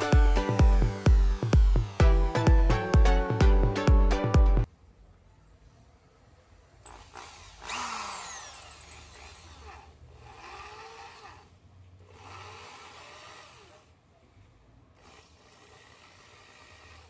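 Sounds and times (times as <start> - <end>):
electric drill motor bursts: 0.0 - 3.2, 6.8 - 14.0, 14.9 - 17.0.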